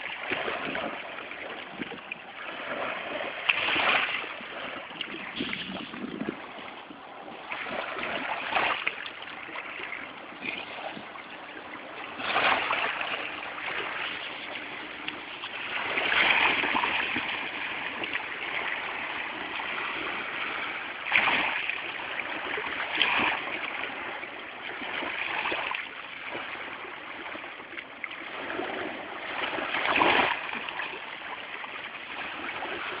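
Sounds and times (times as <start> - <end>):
ocean waves breaking: 0.0 - 33.0.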